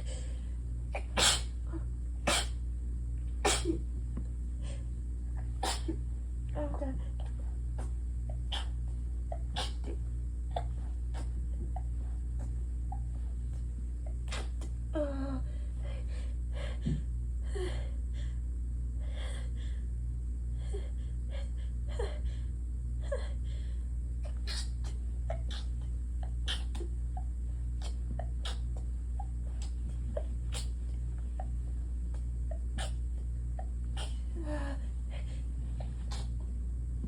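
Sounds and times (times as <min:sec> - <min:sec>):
steady low hum: 0:00.0 - 0:37.0
stifled sneezes: 0:00.9 - 0:01.6, 0:02.2 - 0:02.6, 0:03.4 - 0:03.8, 0:05.5 - 0:06.0, 0:07.8 - 0:11.4, 0:14.2 - 0:14.7, 0:24.3 - 0:25.8, 0:26.4 - 0:26.9, 0:27.8 - 0:28.7, 0:29.6 - 0:30.8, 0:32.5 - 0:33.0, 0:34.0 - 0:34.3, 0:36.1 - 0:36.3.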